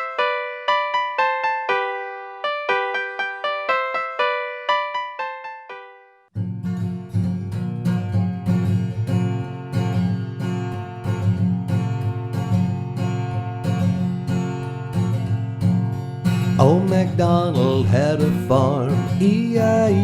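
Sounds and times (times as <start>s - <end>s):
piano note: 0.0s - 6.2s
acoustic guitar strumming: 6.4s - 20.0s.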